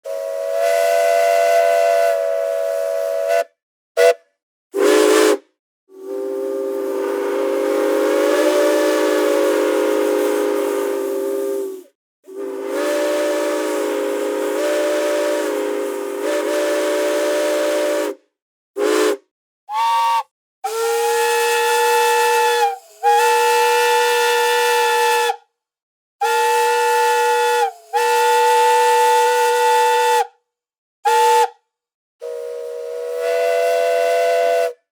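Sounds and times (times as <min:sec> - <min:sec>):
steam train whistle blasts: 0:00.0 - 0:18.2, 0:18.8 - 0:25.5, 0:26.2 - 0:30.4, 0:31.0 - 0:31.6, 0:32.2 - 0:34.9
steam hissing: 0:05.9 - 0:18.2, 0:20.7 - 0:24.7, 0:26.3 - 0:29.7.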